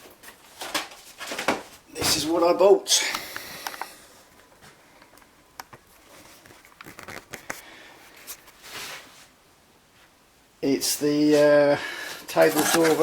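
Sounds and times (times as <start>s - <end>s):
packaging rustling and clicks: 0.1s - 1.7s, 5.2s - 7.6s, 12.4s - 13.0s.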